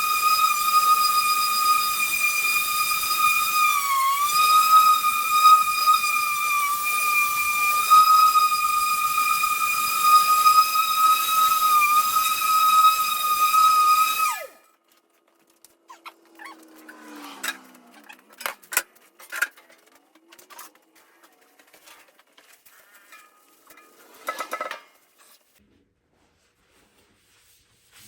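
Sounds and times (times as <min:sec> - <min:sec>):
electric grinder whining: 0:00.0 - 0:14.6.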